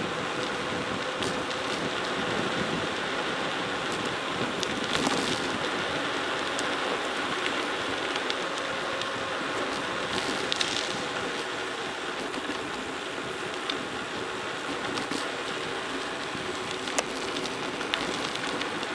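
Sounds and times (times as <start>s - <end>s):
bike tyres crunching on gravel: 0.0s - 18.9s.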